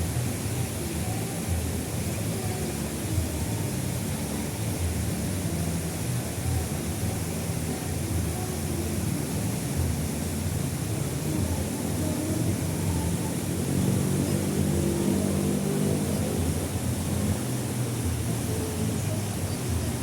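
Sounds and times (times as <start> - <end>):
river water rushing: 0.0 - 20.0.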